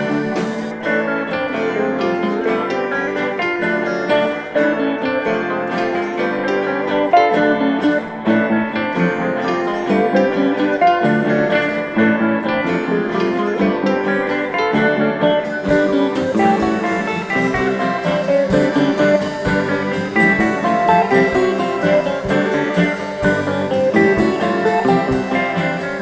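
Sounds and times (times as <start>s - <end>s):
plucked guitar music: 0.0s - 26.0s
drum beat: 15.6s - 26.0s.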